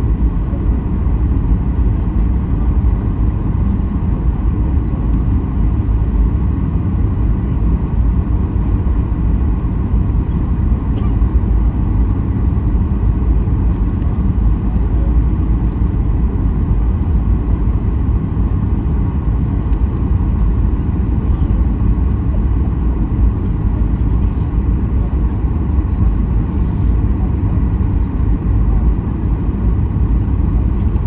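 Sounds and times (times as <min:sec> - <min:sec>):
airliner cabin rumble: 0:00.0 - 0:31.0.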